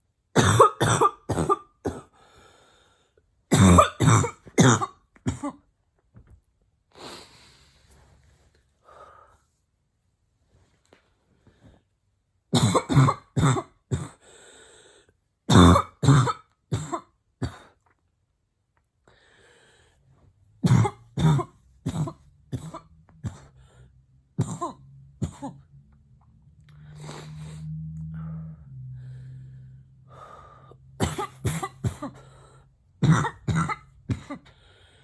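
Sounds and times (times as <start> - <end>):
woman coughing: 0.4 - 2.1, 3.5 - 5.6, 12.6 - 14.2, 15.5 - 17.7, 20.6 - 23.5, 24.4 - 25.7, 31.0 - 32.2, 33.0 - 34.5.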